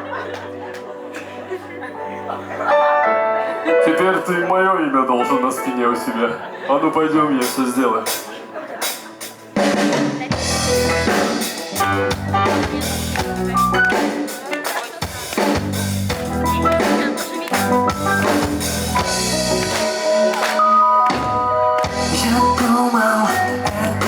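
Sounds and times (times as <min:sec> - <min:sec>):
drum kit steady beat: 0:07.4 - 0:24.0
sustained bass notes: 0:10.4 - 0:14.0, 0:15.6 - 0:16.8, 0:17.6 - 0:24.0.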